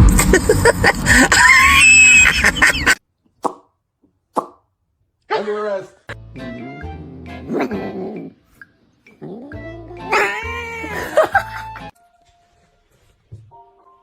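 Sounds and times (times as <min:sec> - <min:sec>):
background music: 0:06.1 - 0:12.6, 0:13.4 - 0:14.0
cat yowling: 0:09.2 - 0:11.3.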